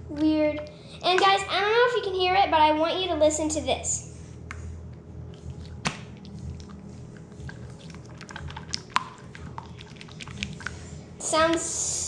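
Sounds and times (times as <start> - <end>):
wet slime squelching: 5.3 - 11.8
small wet clicks and pops: 7.4 - 10.8.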